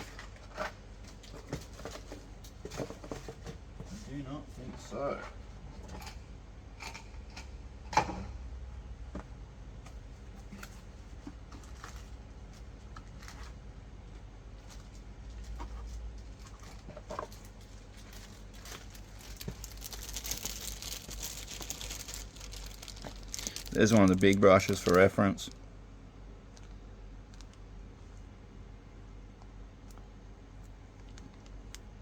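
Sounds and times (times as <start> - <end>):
rustling: 14.6 - 25.2.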